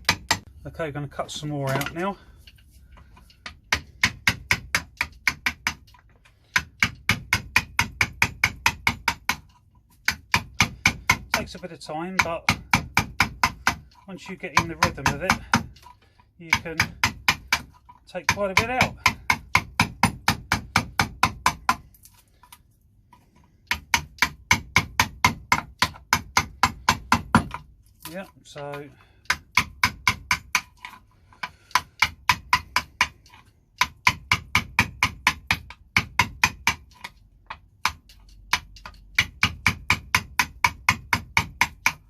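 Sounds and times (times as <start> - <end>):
mallet striking chisel: 0.0 - 0.5, 3.3 - 22.1, 23.6 - 42.0.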